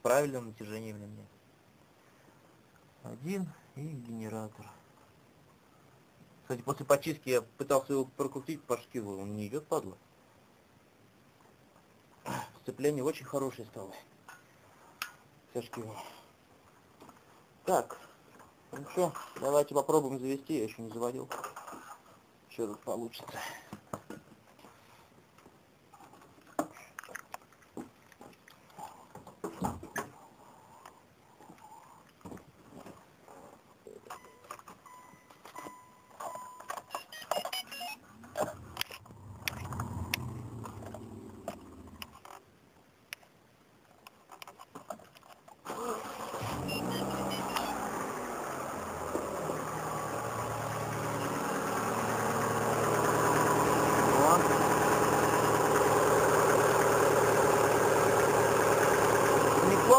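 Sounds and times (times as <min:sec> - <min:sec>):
car engine idling: 0:46.5 - 0:59.9.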